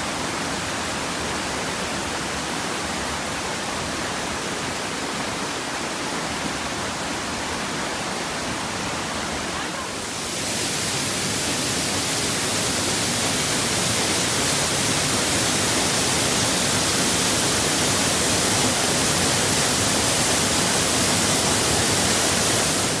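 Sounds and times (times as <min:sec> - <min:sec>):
waterfall pouring: 0:08.8 - 0:23.0.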